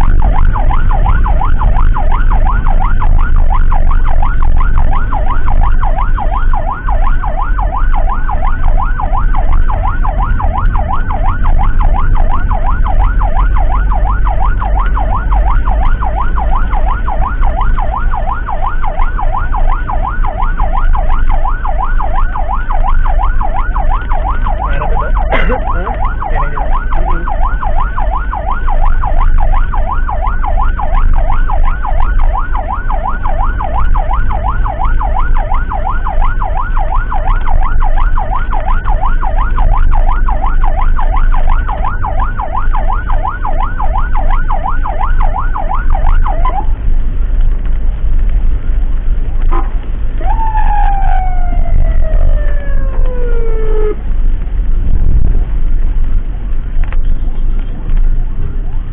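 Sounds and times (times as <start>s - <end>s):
siren on fast yelp: 0.0s - 46.8s, 50.2s - 54.0s
engine and road rumble: 0.0s - 58.9s.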